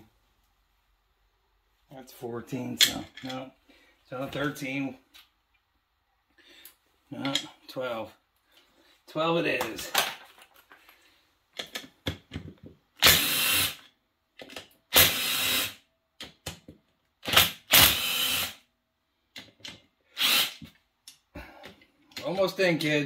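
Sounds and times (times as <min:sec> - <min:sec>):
power drill short bursts: 0:13.0 - 0:13.8, 0:14.9 - 0:15.8, 0:17.7 - 0:18.6, 0:20.2 - 0:20.6.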